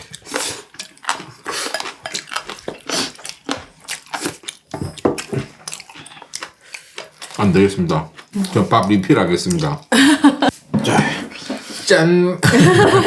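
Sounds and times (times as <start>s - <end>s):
crunchy chewing: 0.0s - 9.9s.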